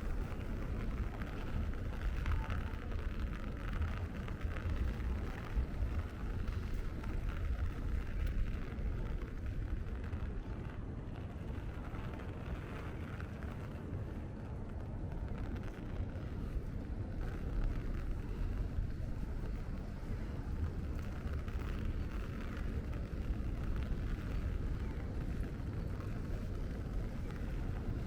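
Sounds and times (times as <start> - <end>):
rain hissing: 15.1 - 28.0.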